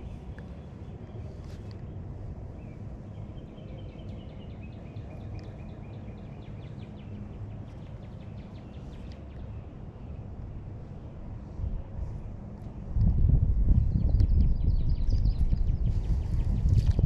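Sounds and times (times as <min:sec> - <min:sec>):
wind on microphone: 0:10.8 - 0:17.0.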